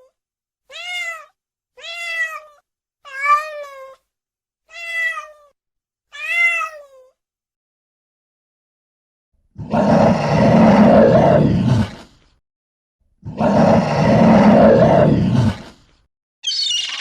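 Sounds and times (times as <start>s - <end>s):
large animal roaring: 9.5s - 12.1s, 13.2s - 15.8s.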